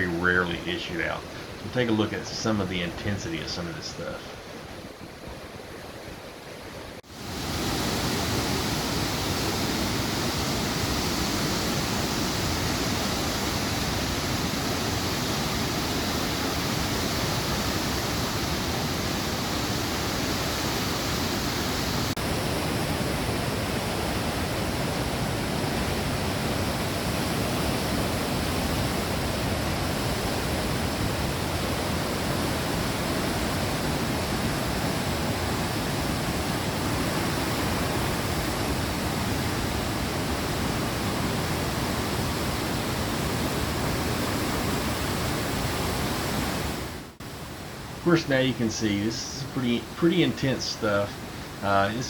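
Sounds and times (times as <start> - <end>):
whitewater rapids roaring: 7.1 - 47.2.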